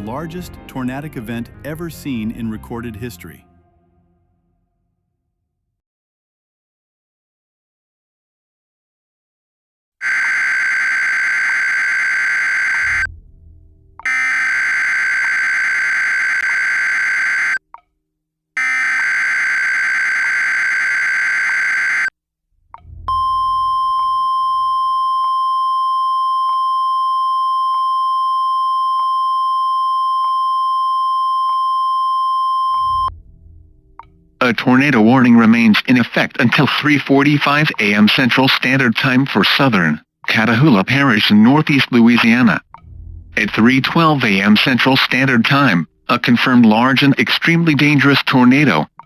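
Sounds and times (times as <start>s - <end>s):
steady single-pitch attention tone: 10.0s - 13.1s, 14.0s - 17.6s, 18.6s - 22.1s, 23.1s - 33.1s
warbling digital data tones: 10.0s - 13.1s, 14.1s - 17.6s, 18.6s - 22.1s.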